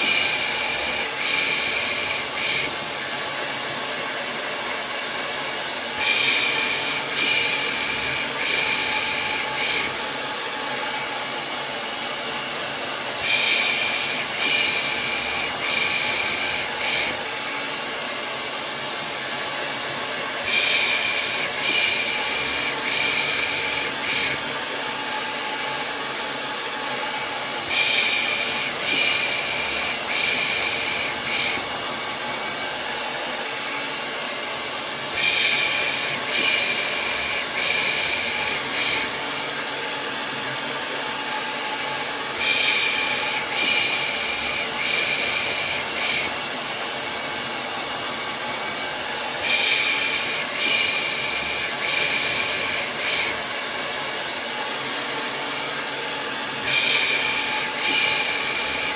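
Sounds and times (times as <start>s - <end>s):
hair dryer running: 0.0s - 58.9s.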